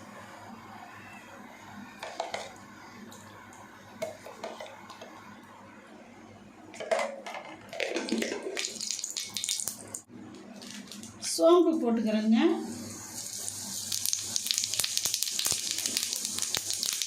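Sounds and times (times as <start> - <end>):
oil pouring into pan: 7.9 - 9.8, 13.2 - 17.0.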